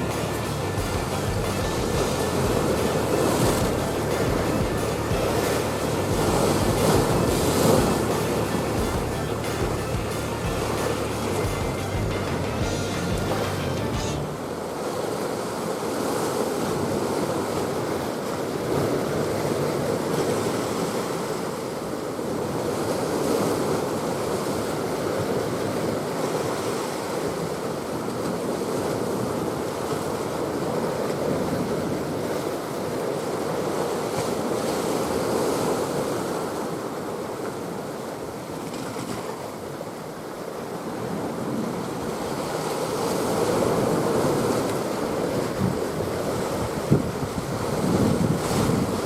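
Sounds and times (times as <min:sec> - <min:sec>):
sea waves: 0:00.0 - 0:49.0
wind buffeting microphone: 0:42.1 - 0:49.0.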